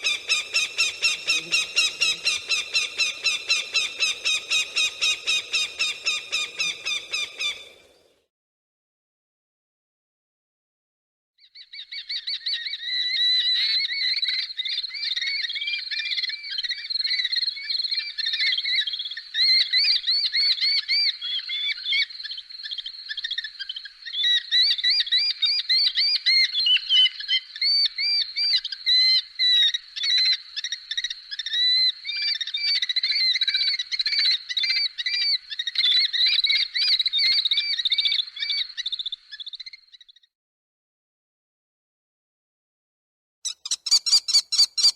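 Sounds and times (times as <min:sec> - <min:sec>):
bird of prey shrill calls: 0:00.0 - 0:07.7, 0:43.5 - 0:44.9.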